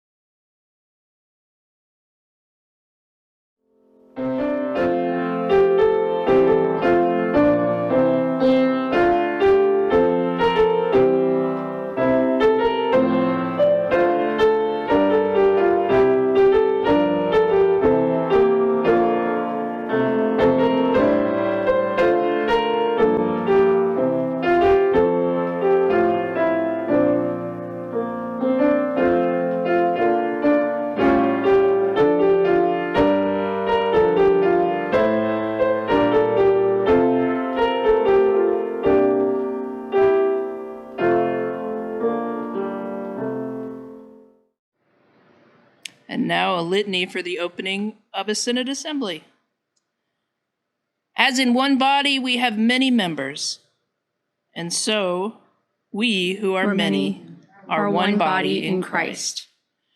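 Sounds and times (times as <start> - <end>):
piano playing chords and melody: 3.8 - 44.6, 57.8 - 59.2.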